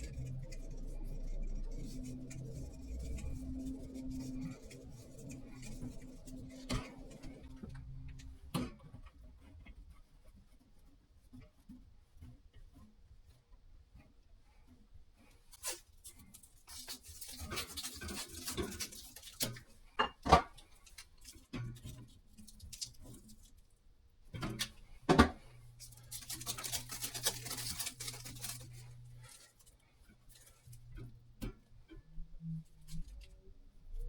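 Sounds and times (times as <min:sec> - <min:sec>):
handling clicks and rustling: 0:24.3 - 0:31.6.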